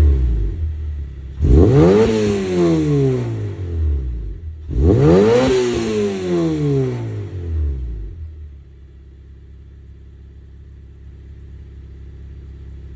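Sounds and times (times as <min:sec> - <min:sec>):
car engine revving: 0:00.0 - 0:08.3.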